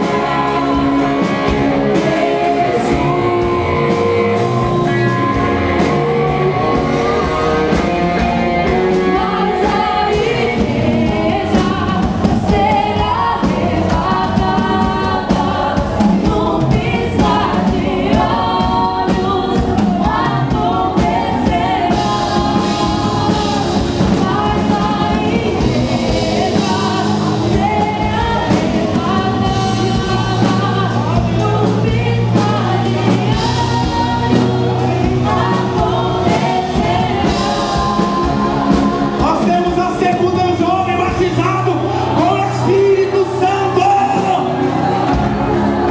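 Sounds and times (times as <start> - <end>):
gospel choir singing with band: 0.0 - 45.9.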